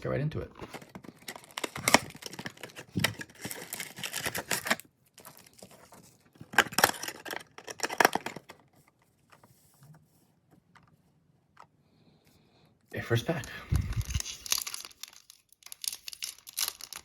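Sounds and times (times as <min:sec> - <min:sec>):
cardboard tearing: 0:00.6 - 0:08.5, 0:13.7 - 0:17.0.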